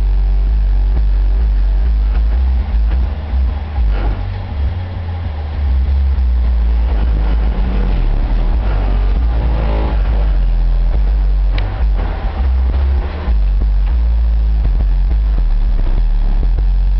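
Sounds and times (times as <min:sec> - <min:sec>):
music with heavy bass: 0:00.0 - 0:16.9.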